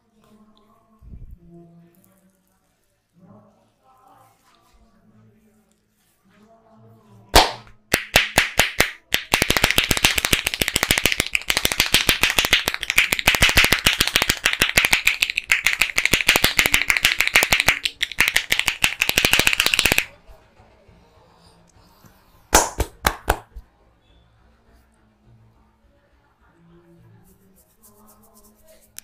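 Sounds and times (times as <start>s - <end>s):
hands slapping on head: 7.3s - 20.1s, 22.5s - 23.6s.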